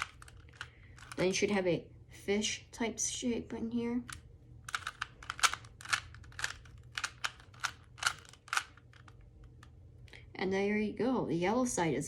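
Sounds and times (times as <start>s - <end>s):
puzzle cube clicking: 0.0s - 1.3s, 4.0s - 9.7s.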